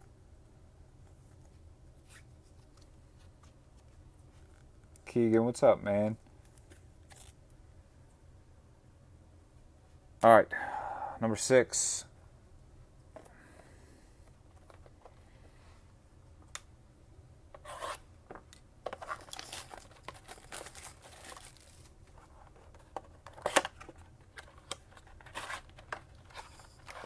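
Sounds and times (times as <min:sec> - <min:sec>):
plastic wrap crinkling and tearing: 0:19.0 - 0:21.9.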